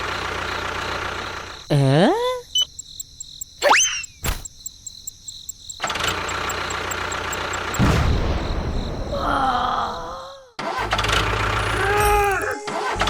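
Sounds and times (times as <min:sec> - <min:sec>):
engine-like running sound: 0:00.0 - 0:01.7, 0:05.8 - 0:07.8, 0:10.7 - 0:11.9
cartoon rising whistle: 0:03.6 - 0:04.2.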